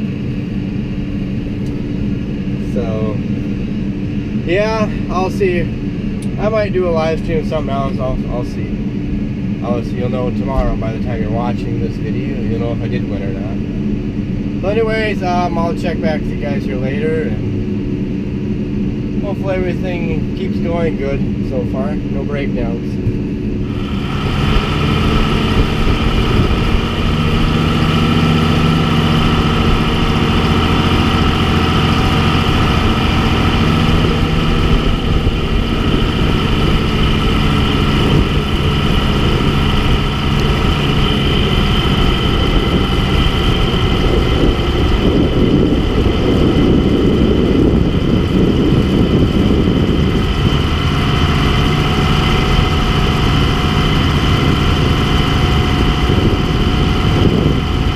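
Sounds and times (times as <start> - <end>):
tractor engine running: 22.9 - 57.9.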